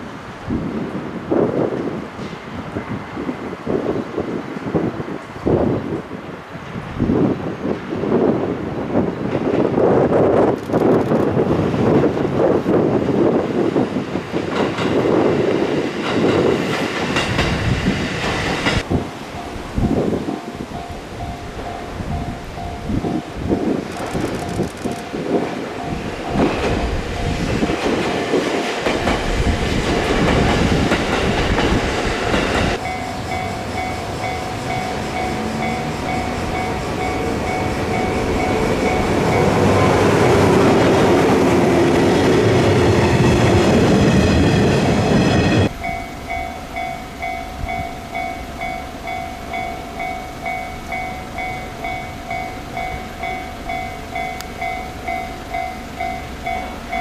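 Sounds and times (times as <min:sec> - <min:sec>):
train wheels clattering on rails: 0:01.6 - 0:03.9, 0:09.0 - 0:19.0, 0:21.1 - 0:57.0
level-crossing alarm two-tone ding: 0:32.8 - 0:40.0.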